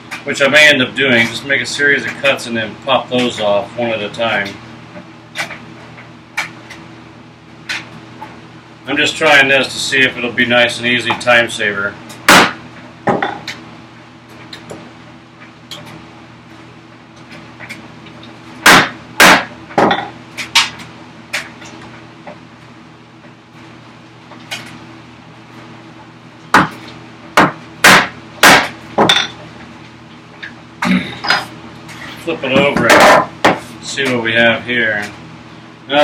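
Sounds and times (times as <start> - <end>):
faint steady hum: 0.0 - 36.0
hammer striking chisel into wood: 12.3 - 12.6, 18.6 - 20.0, 27.4 - 29.2.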